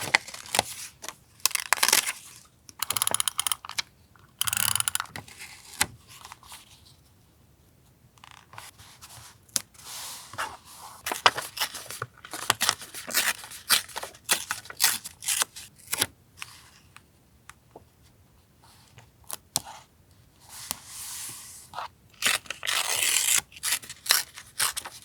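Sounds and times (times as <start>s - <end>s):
scissors snipping paper: 22.3s - 25.0s.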